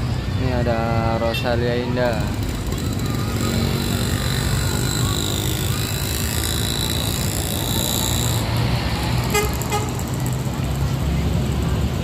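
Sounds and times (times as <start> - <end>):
road traffic passing: 0.0 - 12.0
high whine: 2.2 - 10.8.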